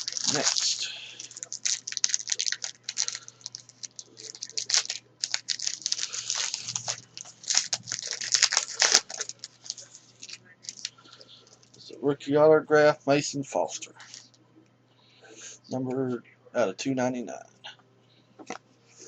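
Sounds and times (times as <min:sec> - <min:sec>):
card wrapper crinkling: 0:00.0 - 0:11.8.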